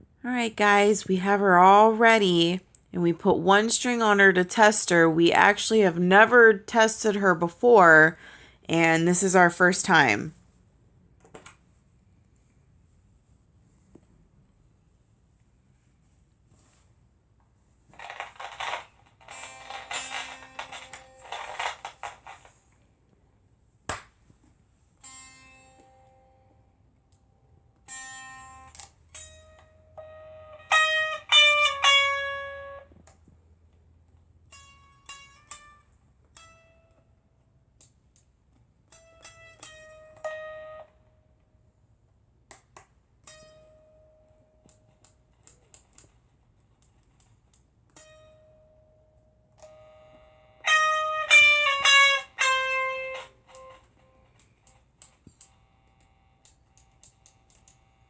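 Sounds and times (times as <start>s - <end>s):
electric guitar notes sliding down: 19.3s - 21.6s, 27.8s - 33.0s, 39.2s - 41.0s, 49.6s - 54.3s
small clicks: 53.2s - 57.9s.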